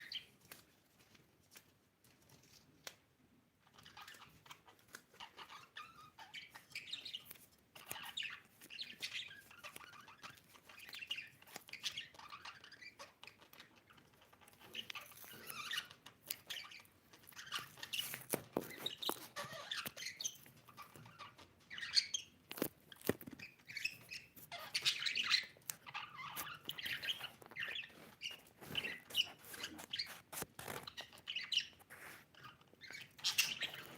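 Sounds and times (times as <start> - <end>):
budgerigar chirping and warbling: 18.7 - 22.4, 23.4 - 33.9.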